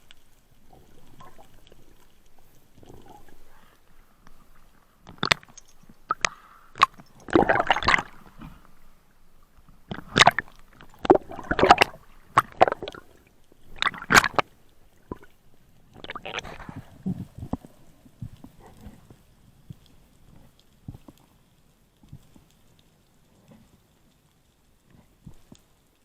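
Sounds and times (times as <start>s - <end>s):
water gurgling and splashing: 0.6s - 3.7s, 4.3s - 9.0s, 9.8s - 18.4s.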